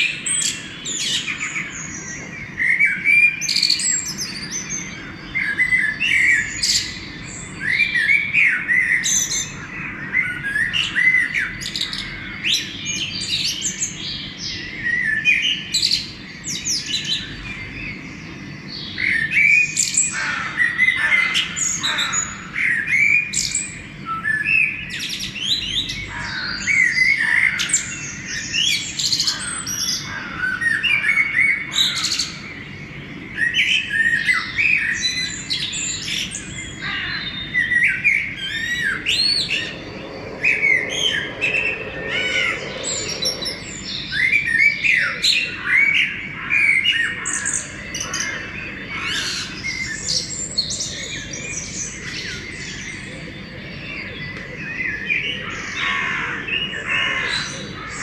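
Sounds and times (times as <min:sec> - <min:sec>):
birds chirping and singing: 0:00.0 - 0:58.0
bird squawk: 0:36.1 - 0:50.3.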